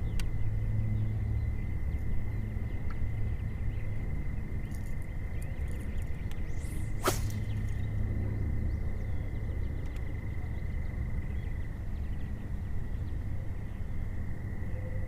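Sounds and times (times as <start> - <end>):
high whine: 6.0 - 9.7
fishing rod swish: 6.6 - 7.8.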